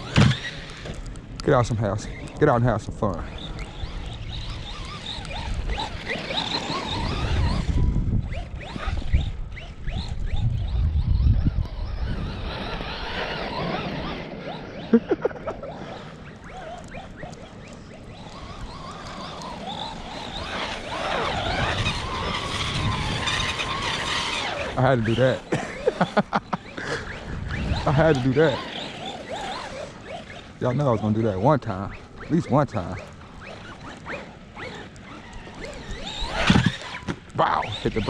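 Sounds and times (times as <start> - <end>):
wind rumble on microphone: 0.0 - 29.8, 34.6 - 38.0
electric motor whining: 0.0 - 38.0.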